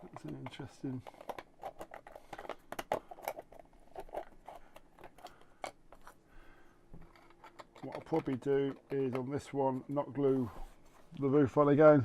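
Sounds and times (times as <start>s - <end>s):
wooden pieces clicking and tapping: 0.0s - 6.1s, 6.9s - 10.0s.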